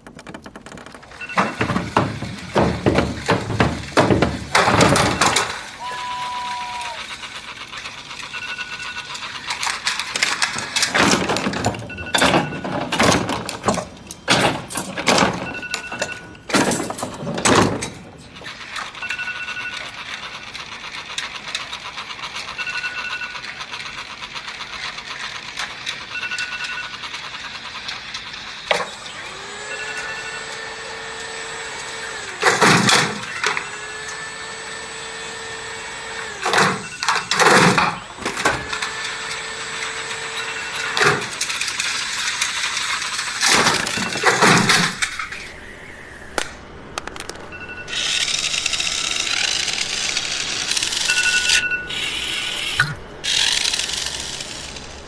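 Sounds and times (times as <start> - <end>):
phone alarm beeping: 1.1 - 1.9, 5.0 - 5.6, 8.3 - 9.5, 11.8 - 12.8, 15.4 - 16.5, 19.0 - 20.1, 22.5 - 23.6, 26.1 - 27.1, 29.6 - 30.6, 36.6 - 38.2, 40.1 - 41.2, 47.5 - 48.3, 51.0 - 52.6
loud bangs and clattering: 1.2 - 5.7.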